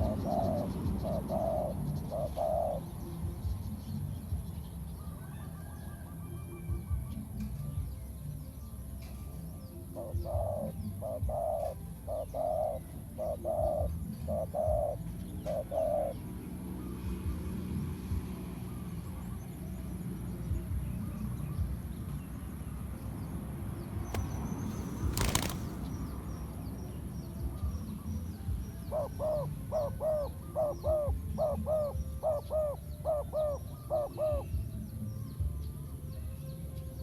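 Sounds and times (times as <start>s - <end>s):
dove cooing: 0.0s - 3.5s, 9.7s - 16.6s, 25.0s - 25.7s, 28.8s - 34.7s.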